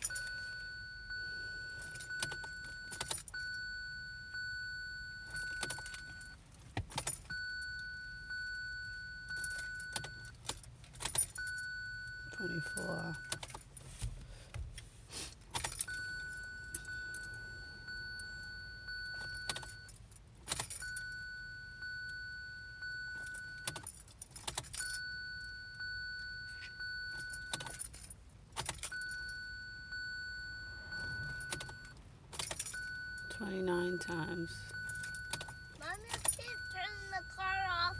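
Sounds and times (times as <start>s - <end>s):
keys jangling and clicking: 5.3s - 7.4s, 9.3s - 11.7s, 19.2s - 21.1s, 23.2s - 25.0s, 26.6s - 29.3s, 31.4s - 33.0s, 34.7s - 37.0s.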